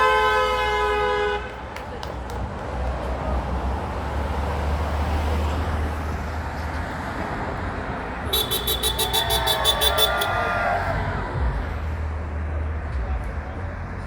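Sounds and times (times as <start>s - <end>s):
vehicle engine and tyre noise: 0.0s - 14.0s
voices calling out: 7.5s - 13.9s.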